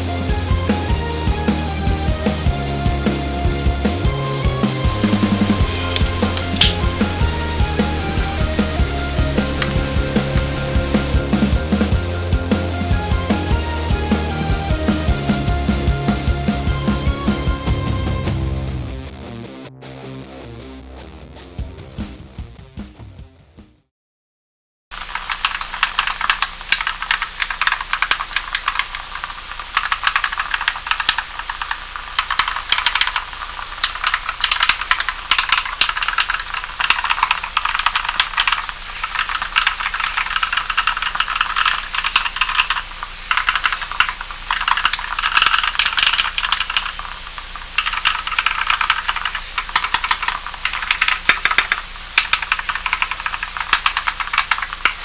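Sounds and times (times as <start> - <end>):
mechanical keyboard typing: 4.9 - 11.2, 25.0 - 55.0.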